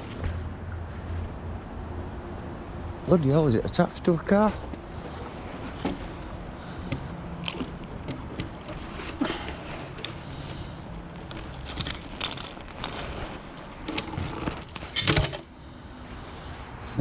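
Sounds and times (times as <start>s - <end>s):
metal clinking and rattling: 11.2s - 15.5s.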